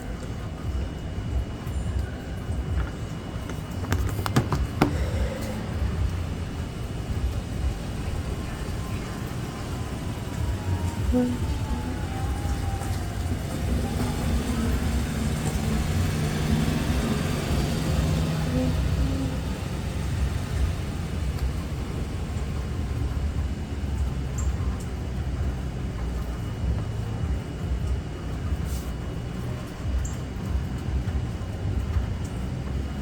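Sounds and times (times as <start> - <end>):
steady rain: 0.0 - 4.0, 4.8 - 33.0
faint hum: 0.0 - 33.0
low rumble: 4.6 - 16.1.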